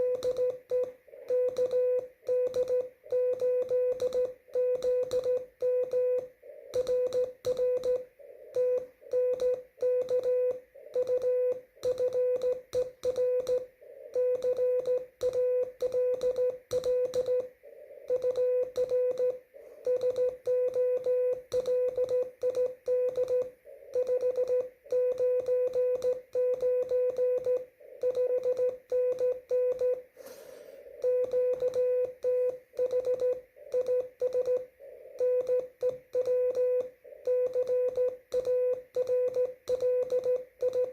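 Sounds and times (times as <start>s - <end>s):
morse code tone: 0.0s - 30.1s, 31.0s - 40.9s
radio band noise hiss: 30.1s - 31.0s.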